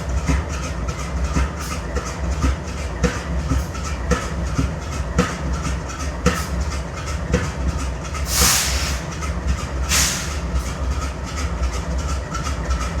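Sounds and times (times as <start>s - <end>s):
locomotive diesel idling unevenly: 0.0s - 13.0s
air hissing: 8.3s - 9.1s, 9.9s - 10.4s.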